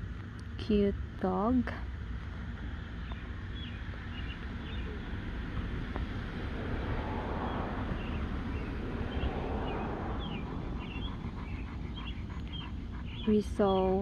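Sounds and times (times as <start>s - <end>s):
low rumble: 3.0s - 13.8s.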